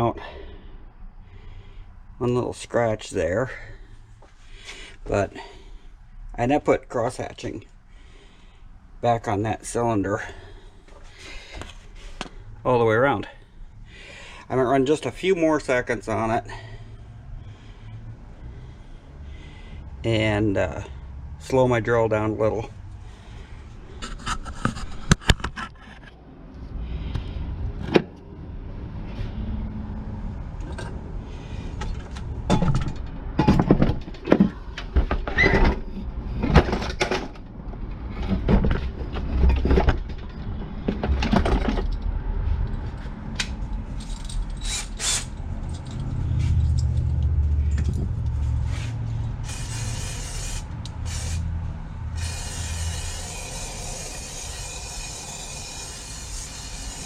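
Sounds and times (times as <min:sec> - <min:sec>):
electric drill motor rumble: 0:44.6 - 0:45.3, 0:49.4 - 0:51.5, 0:52.1 - 0:57.0
hone stones scraping metal: 0:48.7 - 0:51.5, 0:52.1 - 0:57.0.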